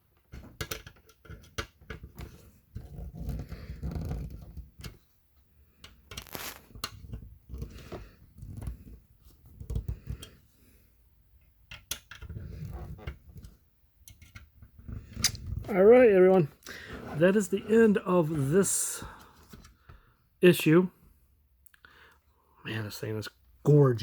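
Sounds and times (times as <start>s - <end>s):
plastic parts clicking and tapping: 0.1s - 5.0s, 5.8s - 8.7s, 9.5s - 10.4s, 11.4s - 12.4s, 13.0s - 15.4s
rustling: 6.2s - 6.8s.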